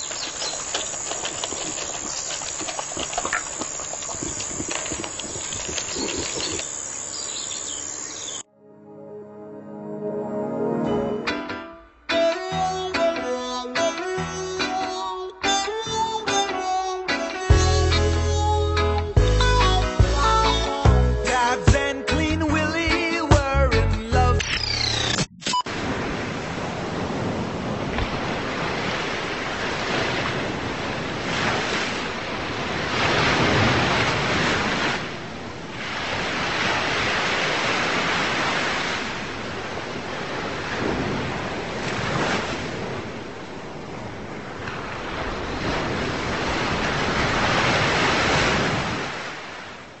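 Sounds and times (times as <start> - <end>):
ocean waves breaking: 0.0 - 8.4, 25.7 - 50.0.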